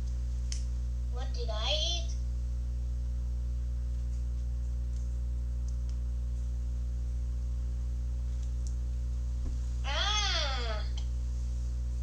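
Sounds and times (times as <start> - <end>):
faint light clicks: 0.0 - 0.7
low electrical hum: 0.0 - 12.0.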